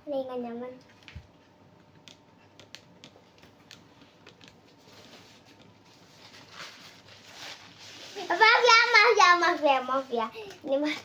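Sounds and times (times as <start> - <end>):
soft rustling: 3.9 - 11.0.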